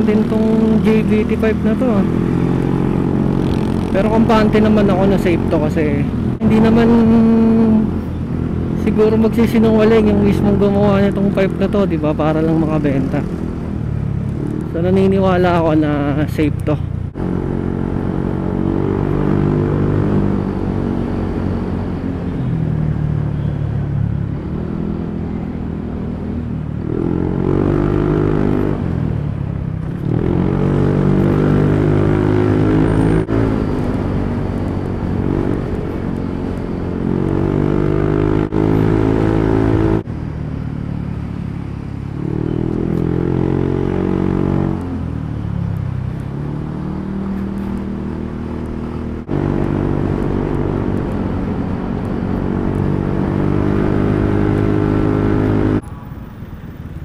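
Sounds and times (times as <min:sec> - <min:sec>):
scooter engine revving while riding: 0:00.0 - 0:08.8, 0:17.2 - 0:22.2, 0:26.6 - 0:29.2, 0:29.8 - 0:40.1, 0:42.1 - 0:45.2, 0:46.0 - 0:55.8.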